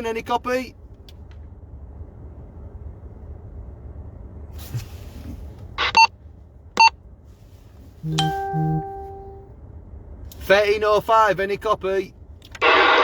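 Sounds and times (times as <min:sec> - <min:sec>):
steady low rumble: 0:00.0 - 0:13.0
radio beeps: 0:05.8 - 0:06.1.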